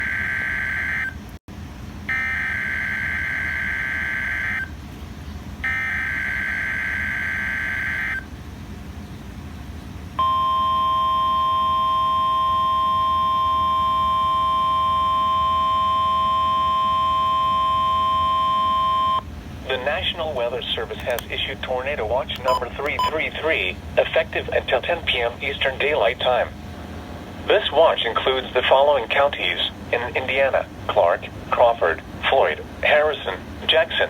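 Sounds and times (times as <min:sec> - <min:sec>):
steady warning alarm tone: 0:00.0 - 0:01.2, 0:02.1 - 0:04.7, 0:05.6 - 0:08.3, 0:10.2 - 0:20.2, 0:22.3 - 0:26.6
radio hiss: 0:19.6 - 0:34.0.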